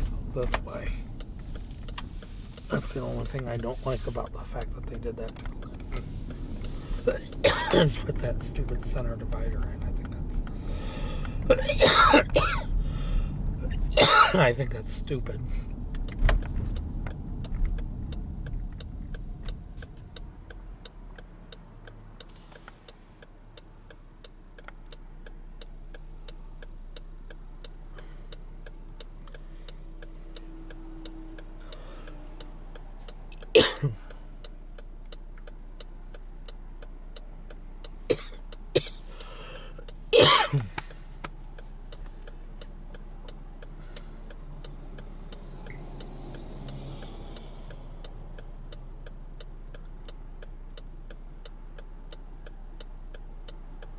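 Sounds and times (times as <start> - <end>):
car cabin hum: 0.0 - 53.9
turn signal ticking: 0.0 - 53.9
person coughing: 7.1 - 8.1, 11.5 - 12.7, 14.0 - 14.4, 33.6 - 34.0, 38.1 - 39.0, 40.2 - 40.8.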